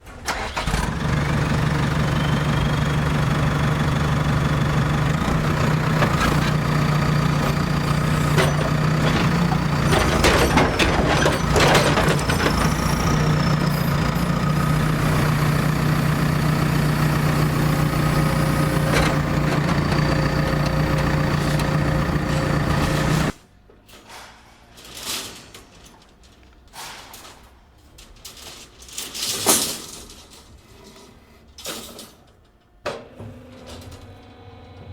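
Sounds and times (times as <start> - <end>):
clanks and rattles: 0.1 - 34.2
heavy vehicle engine idling: 0.6 - 23.4.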